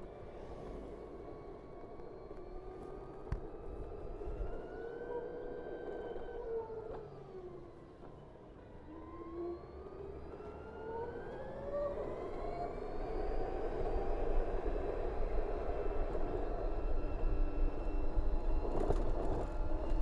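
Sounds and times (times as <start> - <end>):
wind and road noise: 0.0 - 5.0, 11.3 - 20.0
electric scooter motor whining: 8.8 - 20.0.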